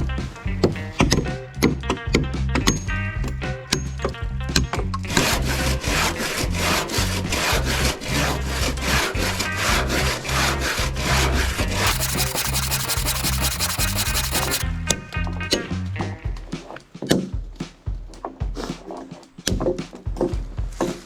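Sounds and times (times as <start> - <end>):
background music with bass: 0.0 - 16.5
saw cutting through log: 5.1 - 14.6.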